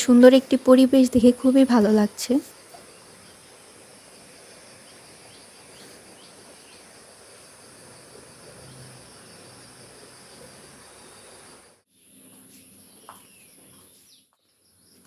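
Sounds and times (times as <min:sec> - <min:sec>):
background hiss: 0:00.0 - 0:14.8
insect chorus: 0:00.2 - 0:13.9
bird chirps: 0:12.2 - 0:15.0.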